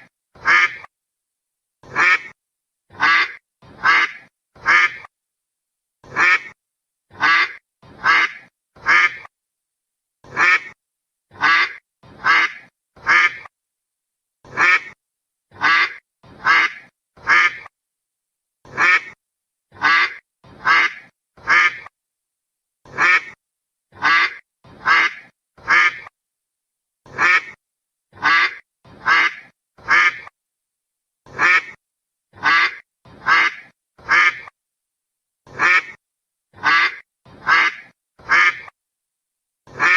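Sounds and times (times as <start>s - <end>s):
duck quacking: 0.0s - 0.9s, 1.8s - 5.1s, 6.0s - 9.3s, 10.2s - 13.5s, 14.4s - 17.7s, 18.6s - 21.9s, 22.8s - 26.2s, 27.1s - 30.4s, 31.3s - 34.6s, 35.5s - 38.8s, 39.7s - 39.9s.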